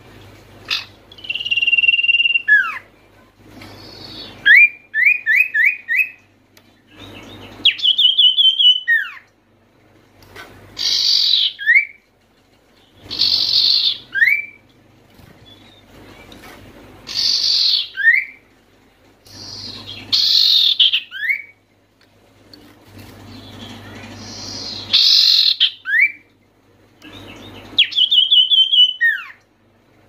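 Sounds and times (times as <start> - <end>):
harsh buzzy bird calls: 0.6 - 3.0, 3.6 - 9.4, 10.4 - 12.0, 12.8 - 16.4, 17.0 - 18.5, 19.2 - 21.6, 23.0 - 26.3, 27.0 - 29.5
bird whistling song: 0.7 - 2.9, 3.7 - 6.3, 6.9 - 9.3, 10.8 - 12.0, 13.0 - 14.6, 17.1 - 18.4, 19.3 - 21.6, 23.3 - 26.3, 27.0 - 29.4.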